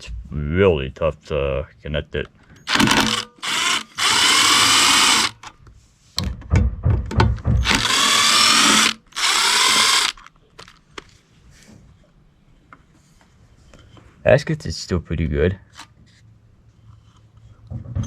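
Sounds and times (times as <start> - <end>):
cordless drill whining: 2.6 - 5.5, 7.6 - 10.3.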